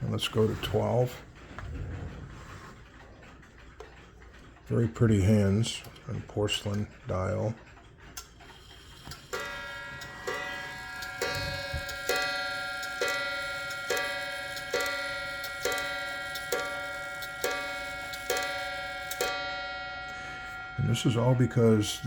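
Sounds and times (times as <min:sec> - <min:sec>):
clock striking on wire gong: 0:08.8 - 0:22.0.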